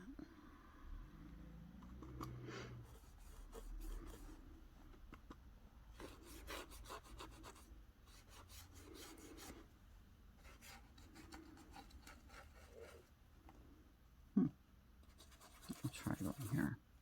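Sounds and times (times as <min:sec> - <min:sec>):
small brush rubbing strokes: 0:15.1 - 0:16.7.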